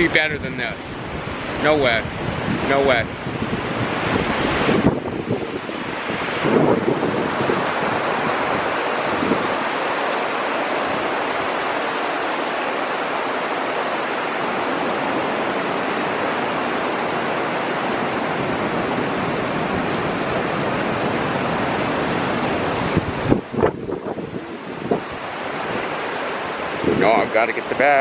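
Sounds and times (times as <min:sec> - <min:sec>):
rushing water roar: 0:00.0 - 0:28.0.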